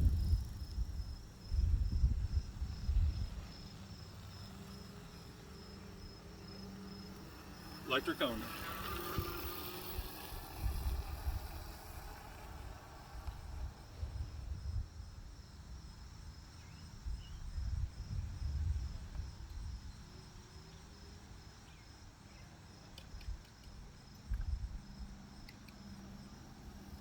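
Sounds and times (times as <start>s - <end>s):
wind buffeting microphone: 0.0s - 3.7s, 8.6s - 15.3s, 17.0s - 20.0s
high insect trill: 0.0s - 27.0s.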